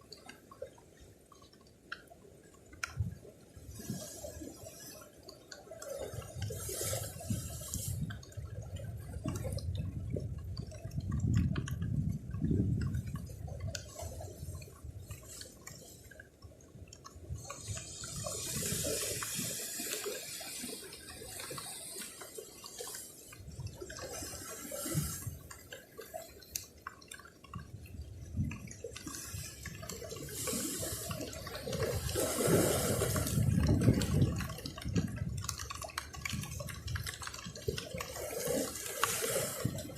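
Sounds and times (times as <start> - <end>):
sea waves washing against rocks: 17.2 - 39.9.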